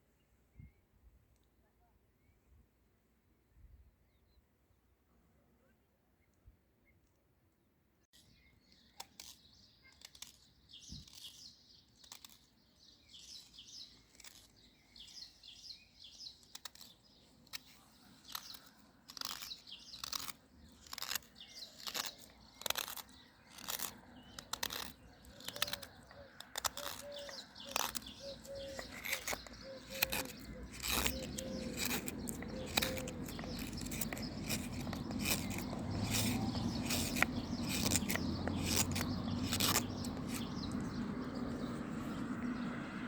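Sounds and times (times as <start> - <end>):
small birds chirping: 8.2 - 43.0
blade cutting into wood: 8.9 - 41.5.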